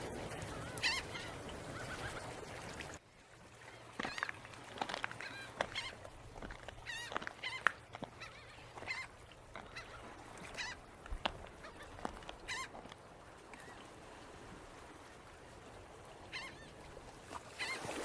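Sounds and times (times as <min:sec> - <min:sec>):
birds crying: 0:04.0 - 0:13.0.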